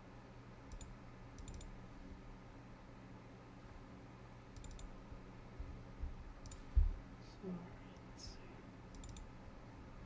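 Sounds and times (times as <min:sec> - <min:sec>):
faint low hum: 0:00.0 - 0:10.0
computer mouse clicking: 0:00.7 - 0:01.8, 0:04.5 - 0:05.0, 0:06.4 - 0:06.7, 0:08.9 - 0:09.3.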